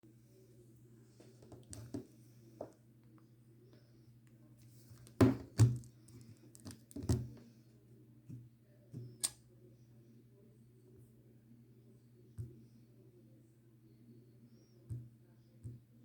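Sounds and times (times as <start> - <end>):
sharp click: 9.2 - 9.4.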